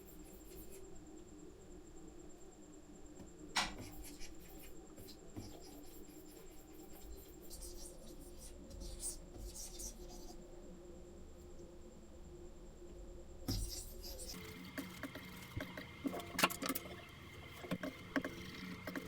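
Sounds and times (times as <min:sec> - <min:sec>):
stylus scratching on tablet: 0:00.0 - 0:00.9, 0:03.8 - 0:10.4, 0:13.5 - 0:19.0.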